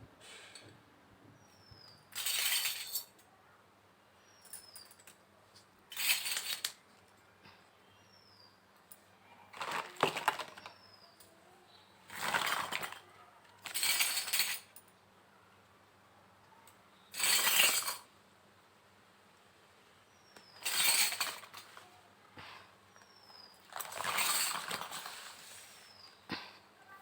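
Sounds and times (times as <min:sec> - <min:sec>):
toy kitchen pieces clinking: 0:05.9 - 0:06.8, 0:09.6 - 0:10.8, 0:12.1 - 0:13.0, 0:13.6 - 0:14.8, 0:17.2 - 0:18.1, 0:20.5 - 0:21.8, 0:23.6 - 0:25.6.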